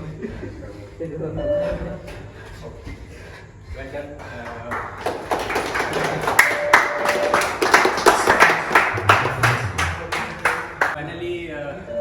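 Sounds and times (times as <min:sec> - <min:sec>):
group clapping in rhythm: 0:04.2 - 0:11.0.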